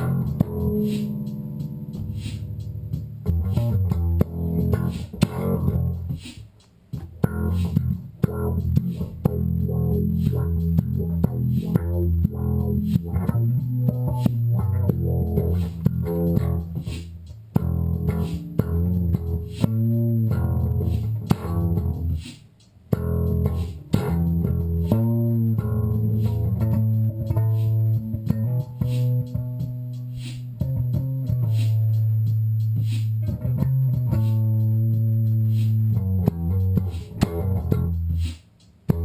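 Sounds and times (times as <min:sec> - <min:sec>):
electric bass funk line: 0:00.0 - 0:39.0.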